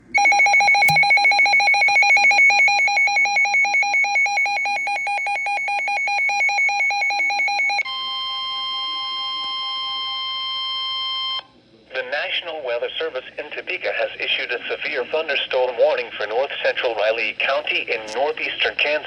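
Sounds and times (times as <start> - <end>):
warbling two-pitch alarm beep: 0.2 - 7.8
steady alert tone: 0.8 - 1.3.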